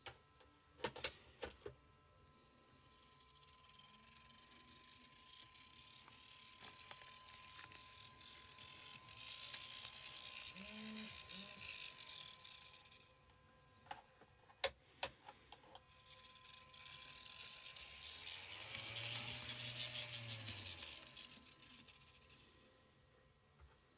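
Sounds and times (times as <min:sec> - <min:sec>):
model train motor whirring: 0:02.4 - 0:13.4, 0:15.6 - 0:22.7.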